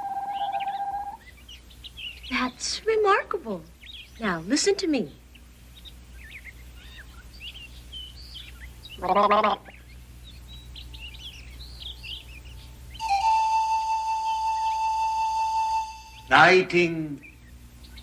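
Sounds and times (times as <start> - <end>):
birds chirping and twittering: 0.0 - 18.0
steady whistled note: 13.0 - 16.8.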